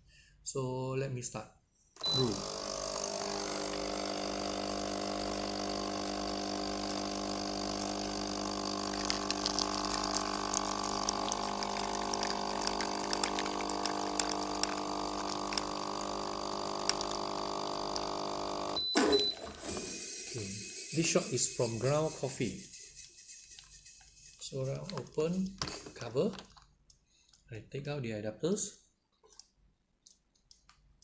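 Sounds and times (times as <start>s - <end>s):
espresso machine pump humming: 2.0s - 18.8s, 19.5s - 25.5s.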